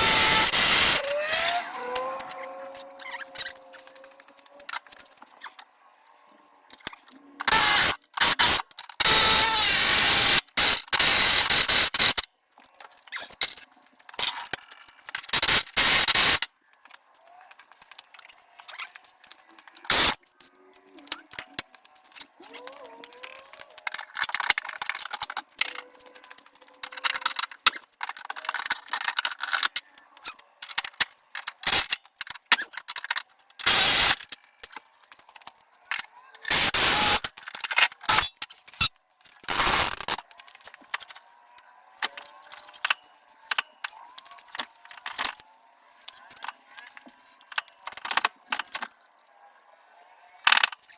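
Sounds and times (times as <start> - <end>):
loud bursts of noise: 0.0 - 1.6.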